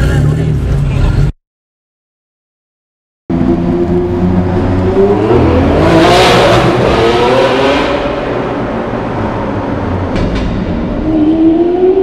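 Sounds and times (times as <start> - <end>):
engine revving: 3.3 - 9.0
sports car accelerating past: 3.3 - 10.1.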